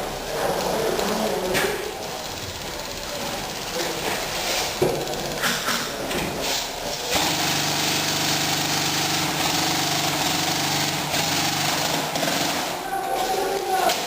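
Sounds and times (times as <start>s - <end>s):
mechanical motor buzz: 7.1s - 12.8s.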